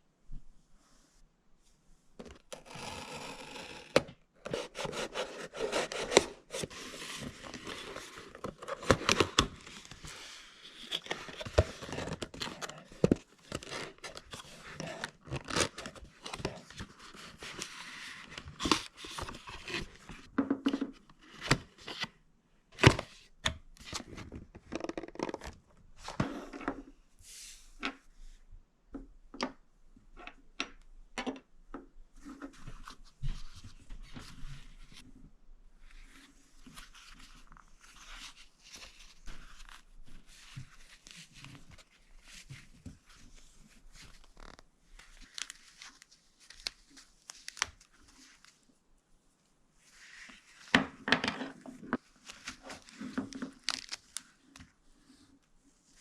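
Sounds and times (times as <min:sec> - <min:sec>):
cardboard and plastic tearing: 0:52.6 - 0:54.2.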